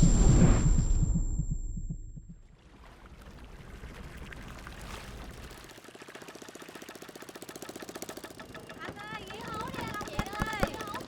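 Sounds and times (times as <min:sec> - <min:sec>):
low throbbing: 0:00.0 - 0:02.6
faint river water: 0:02.3 - 0:11.0
small boat engine chugging: 0:05.3 - 0:11.0.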